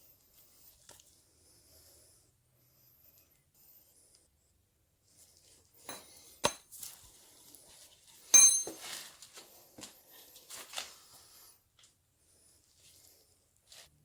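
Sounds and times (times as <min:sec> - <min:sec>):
metal clinks and knocks: 0:05.9 - 0:06.6, 0:08.4 - 0:08.9
ringing metal strike: 0:08.4 - 0:08.8.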